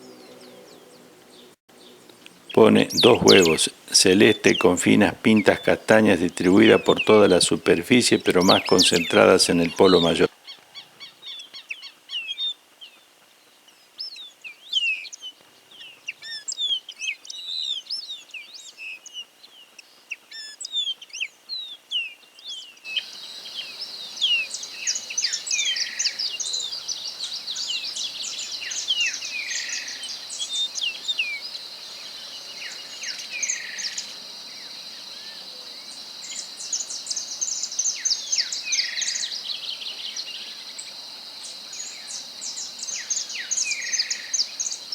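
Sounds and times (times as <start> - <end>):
songbird singing: 0.0 - 44.9
downward-slurred bird notes: 2.5 - 10.3
high insect drone: 23.0 - 44.9.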